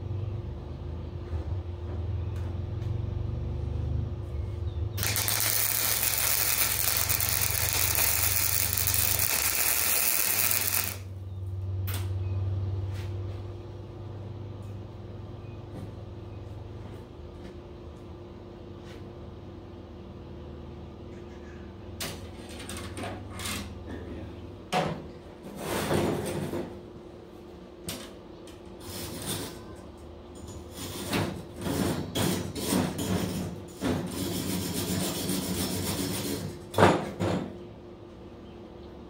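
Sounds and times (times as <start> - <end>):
electrical hum: 4.1 - 18.8
welding arc crackling: 5.0 - 11.1.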